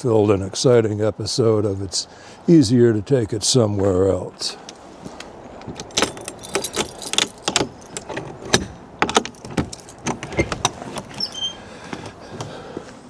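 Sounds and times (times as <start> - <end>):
clicks knocks and clatter: 4.6 - 12.6.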